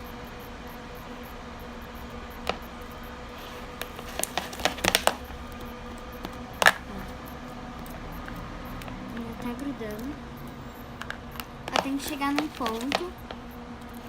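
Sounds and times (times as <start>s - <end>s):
faint steady hum: 0.0s - 14.0s
utensil stirring slime: 3.4s - 5.3s, 11.0s - 13.3s.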